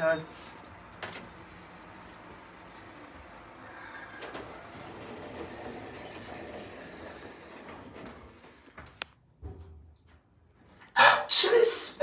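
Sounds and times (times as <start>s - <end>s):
lift running noise: 0.0s - 8.6s.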